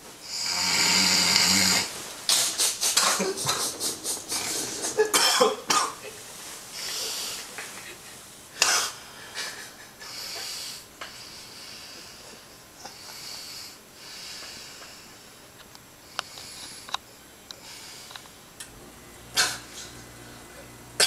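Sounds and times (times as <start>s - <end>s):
man snoring: 0.3s - 1.9s.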